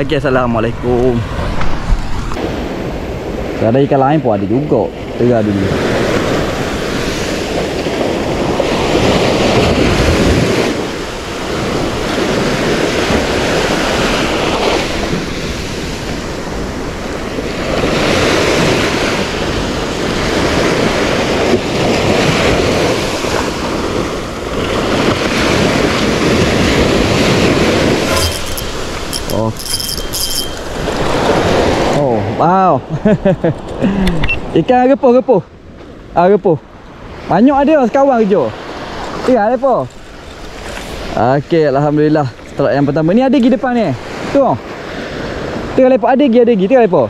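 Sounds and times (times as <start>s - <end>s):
sea waves breaking on shore: 1.2s - 29.5s, 34.4s - 46.4s
wind buffeting microphone: 5.7s - 32.4s.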